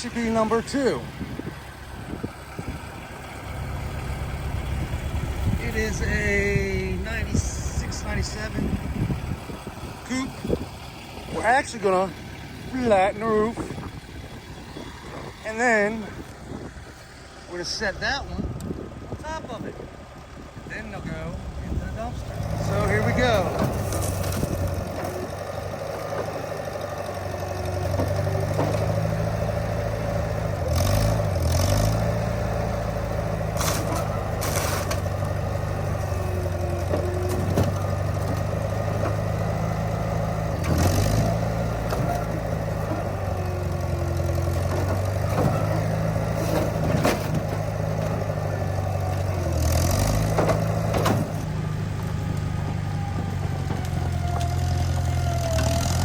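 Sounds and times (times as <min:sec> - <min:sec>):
diesel engine labouring: 0:00.0 - 0:56.0
metal bangs and crunches: 0:33.4 - 0:39.6, 0:40.5 - 0:51.6.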